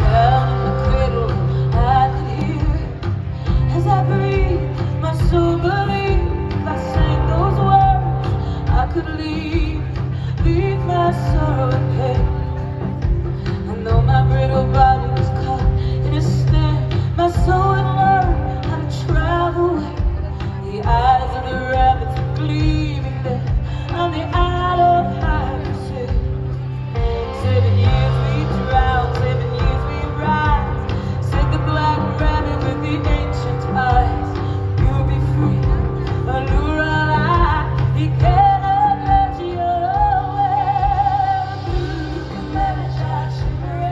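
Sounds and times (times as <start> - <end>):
live band with singing: 0.0 - 43.9.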